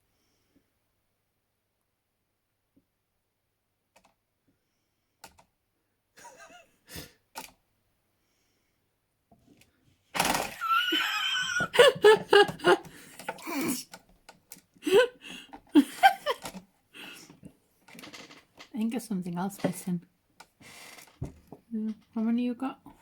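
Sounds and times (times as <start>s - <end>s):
bursts of laughter: 10.5s - 13.7s, 14.8s - 16.5s.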